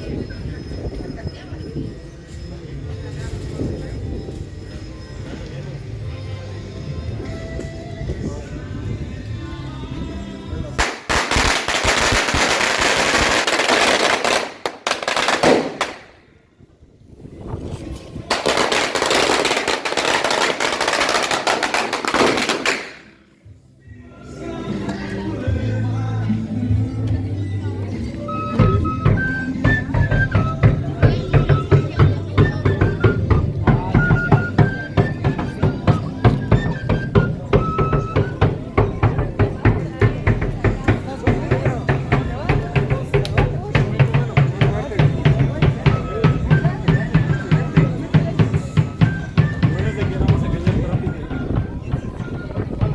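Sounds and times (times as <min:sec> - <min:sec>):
drums beating: 0:10.8 - 0:16.1, 0:18.3 - 0:22.9, 0:27.9 - 0:52.9
firecrackers crackling: 0:10.8 - 0:16.3, 0:17.9 - 0:23.2.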